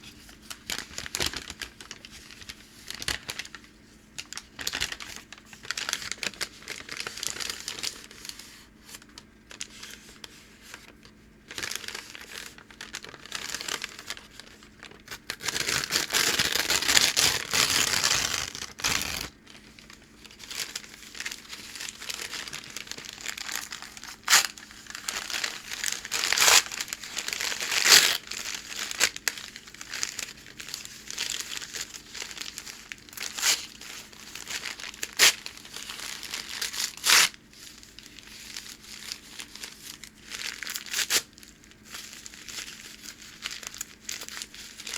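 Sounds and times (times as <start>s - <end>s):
packing paper crinkling: 0.0s - 44.9s
paper tearing: 15.1s - 19.3s, 22.0s - 29.2s.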